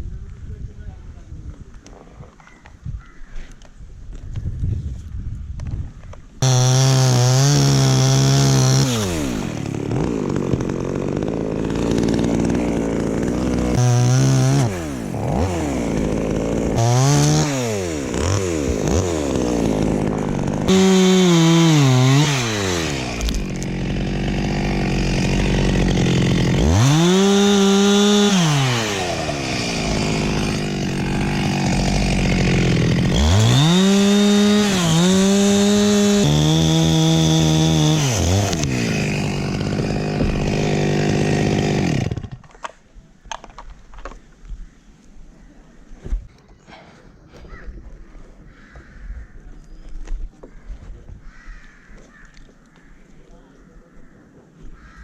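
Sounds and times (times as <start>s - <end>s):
chainsaw revving and idling: 6.4s - 42.4s.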